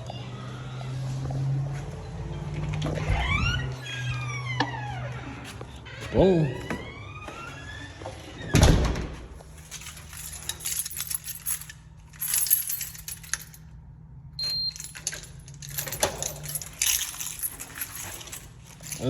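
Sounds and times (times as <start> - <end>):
metallic clinks and rattles: 9.5 - 13.8, 14.4 - 19.0.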